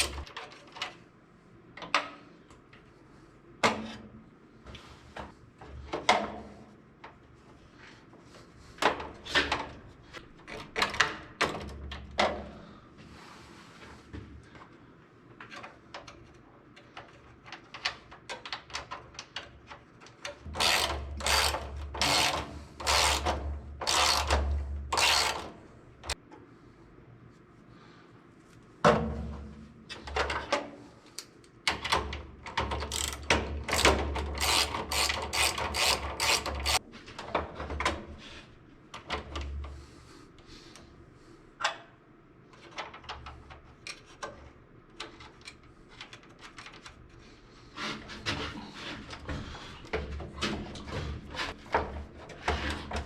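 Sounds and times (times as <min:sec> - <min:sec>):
ratcheting hand tool clicking: 0:20.6 - 0:24.4, 0:25.0 - 0:25.5, 0:32.8 - 0:36.8.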